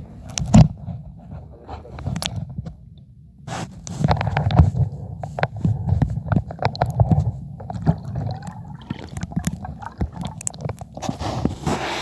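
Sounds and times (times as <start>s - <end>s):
sea water sloshing and gurgling: 5.8s - 12.0s
water splash: 7.7s - 11.2s.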